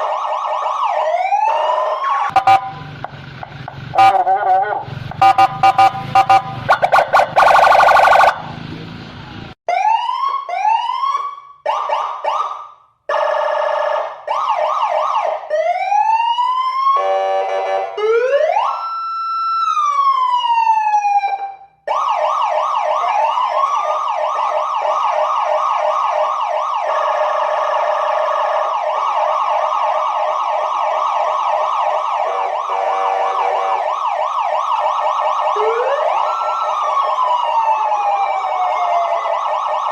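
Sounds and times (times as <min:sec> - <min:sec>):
electronic siren: 0:00.0 - 0:03.1, 0:03.9 - 0:08.5, 0:09.7 - 0:39.9
pulsing horn blasts: 0:02.3 - 0:03.0, 0:03.9 - 0:08.5.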